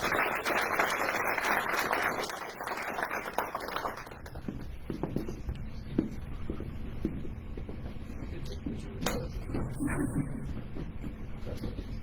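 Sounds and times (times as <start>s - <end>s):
audience applauding: 0.0s - 4.4s.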